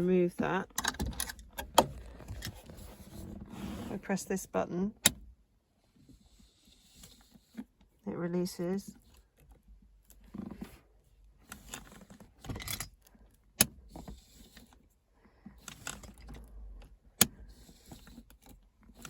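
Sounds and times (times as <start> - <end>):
handbrake lever rattling: 0.7 - 3.6, 5.0 - 5.4, 9.0 - 10.7, 11.4 - 14.9, 15.5 - 19.0
handbrake sharp clicks: 0.8 - 2.6, 5.0 - 5.3.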